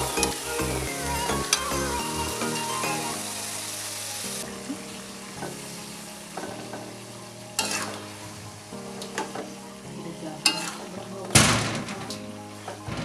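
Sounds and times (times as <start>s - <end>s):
food sizzling in a pan: 0.0s - 11.4s
background music: 0.0s - 13.0s
utensil scraping a pan: 7.6s - 8.1s, 10.4s - 11.0s.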